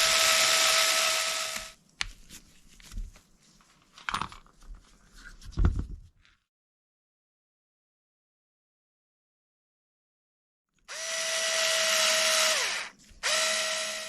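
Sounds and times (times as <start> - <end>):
power drill whining: 0.0 - 1.8, 10.9 - 14.0.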